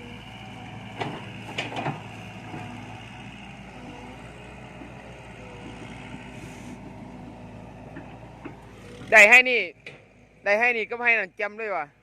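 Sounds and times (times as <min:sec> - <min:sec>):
excavator diesel engine running: 0:00.0 - 0:11.6
metal knocks and clanks: 0:01.0 - 0:02.7.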